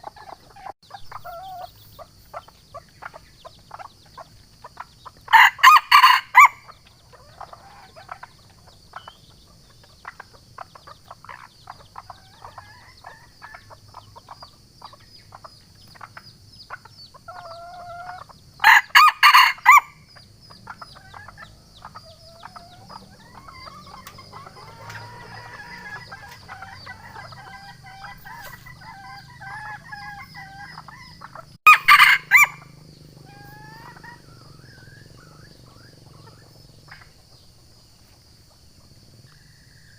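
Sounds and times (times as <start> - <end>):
high insect hum: 0.0 - 39.9
small bird calls: 0.0 - 39.9
rooster crowing: 5.3 - 6.7, 18.6 - 20.0, 22.4 - 36.4
faint clucks: 20.2 - 31.6.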